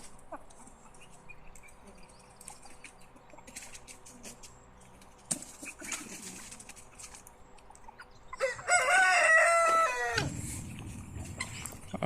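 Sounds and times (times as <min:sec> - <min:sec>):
rooster crowing: 0:08.4 - 0:10.4.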